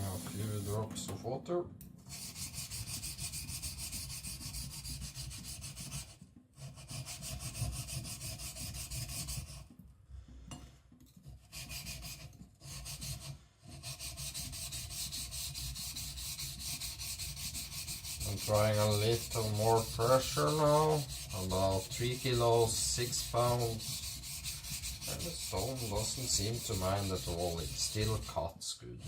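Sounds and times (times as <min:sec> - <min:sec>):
blade grinding on whetstone: 0:11.6 - 0:28.4.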